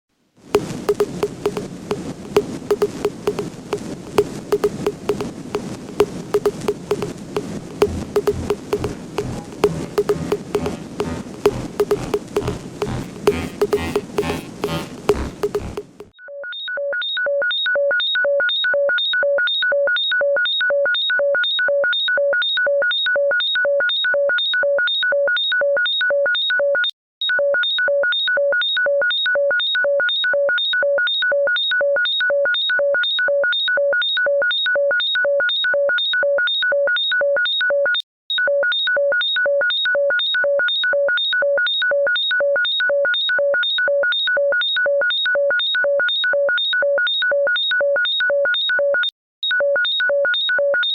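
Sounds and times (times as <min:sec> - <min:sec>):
electronic ringtone beeping: 0:00.6 - 0:16.1.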